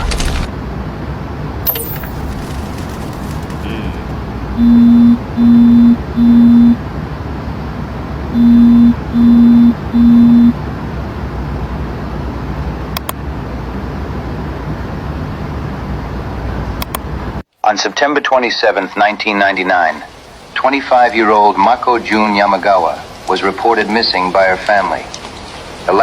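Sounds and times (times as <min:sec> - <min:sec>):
low hum and hiss: 0:00.0 - 0:02.8, 0:03.4 - 0:26.0
low electronic beeps: 0:04.5 - 0:06.8, 0:08.3 - 0:10.6
short clicks: 0:12.9 - 0:13.2, 0:16.8 - 0:17.1.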